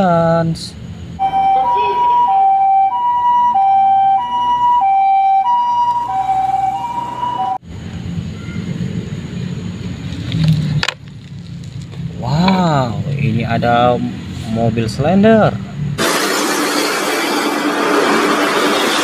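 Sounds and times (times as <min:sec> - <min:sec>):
two-tone ambulance siren: 0:01.2 - 0:07.6.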